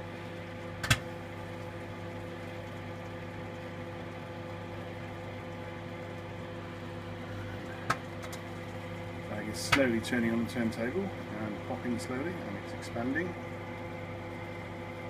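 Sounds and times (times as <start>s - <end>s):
microwave oven humming: 0.0s - 15.0s
popcorn kernel popping: 0.8s - 1.1s.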